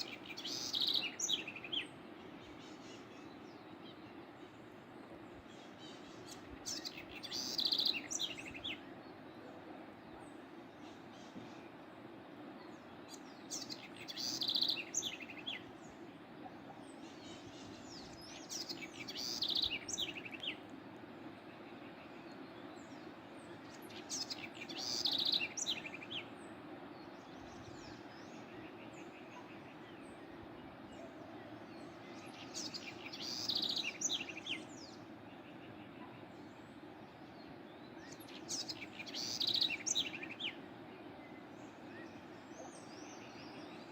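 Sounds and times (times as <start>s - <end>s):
songbird warbling: 0.0s - 4.0s, 5.6s - 8.9s, 12.6s - 15.7s, 16.5s - 20.6s, 23.7s - 26.3s, 31.0s - 36.3s, 38.0s - 40.6s.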